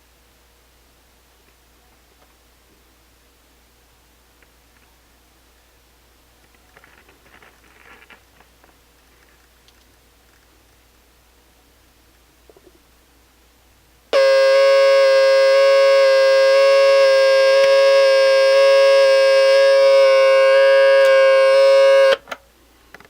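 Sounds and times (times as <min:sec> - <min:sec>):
alarm clock buzzing: 0:14.2 - 0:22.2.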